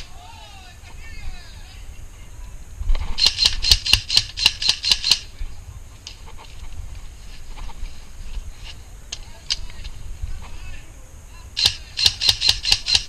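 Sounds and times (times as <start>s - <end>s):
airsoft gun shots: 3.2s - 5.3s, 11.6s - 13.0s.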